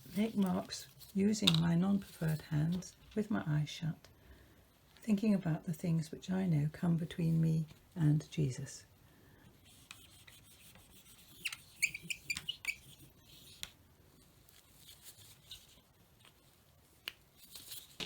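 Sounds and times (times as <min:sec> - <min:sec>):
marker squeaking on plastic sheet: 0:09.7 - 0:13.7, 0:14.6 - 0:16.5.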